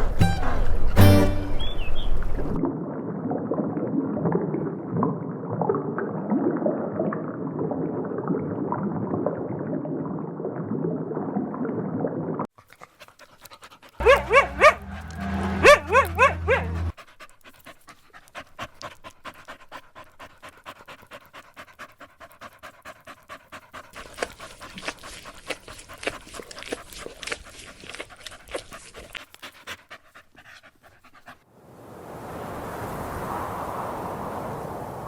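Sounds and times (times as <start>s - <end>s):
dog panting rapidly: 12.6s - 31.5s.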